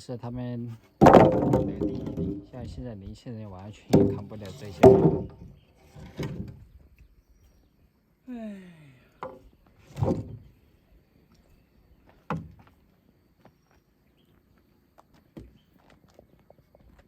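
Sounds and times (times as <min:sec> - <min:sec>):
wooden planks knocking: 0:01.0 - 0:02.8, 0:03.9 - 0:06.6.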